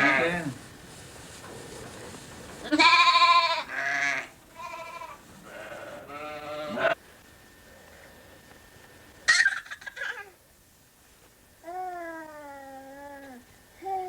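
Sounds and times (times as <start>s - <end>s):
sheep bleating: 0.0s - 0.5s, 2.6s - 7.0s.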